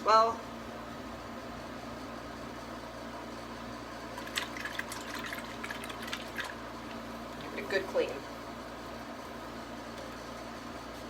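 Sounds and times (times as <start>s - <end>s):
steady background hum: 0.0s - 11.0s
paintbrush splashing in water jar: 4.2s - 7.1s.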